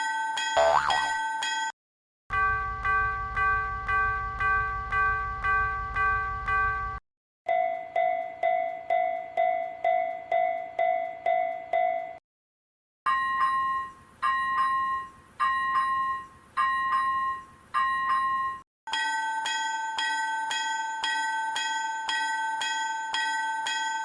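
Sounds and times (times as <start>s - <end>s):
slow level crossing bell: 0.0s - 1.7s, 2.3s - 12.2s, 13.1s - 24.0s
fast crossing bell clanging: 13.1s - 24.0s.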